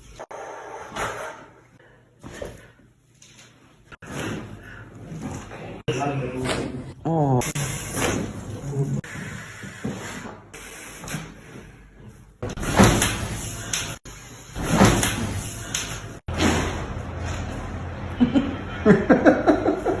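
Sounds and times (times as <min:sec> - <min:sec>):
person speaking: 0:05.9 - 0:07.8.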